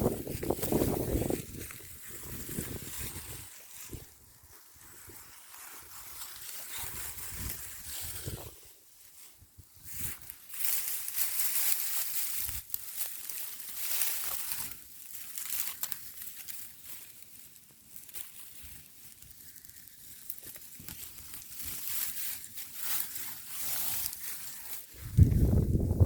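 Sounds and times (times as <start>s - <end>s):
gusty wind rustling dry leaves: 0.0s - 17.2s, 18.0s - 26.0s.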